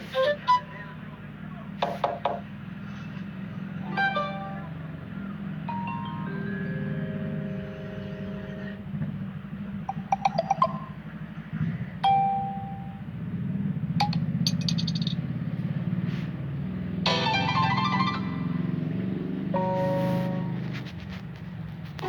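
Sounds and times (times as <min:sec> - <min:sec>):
phone notification chimes: 0:09.9 - 0:11.0.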